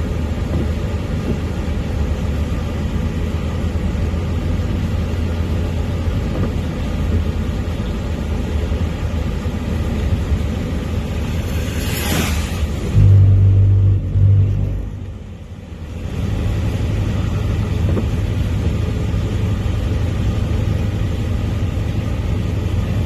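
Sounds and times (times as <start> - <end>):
steady low rumble: 0.0 - 23.0.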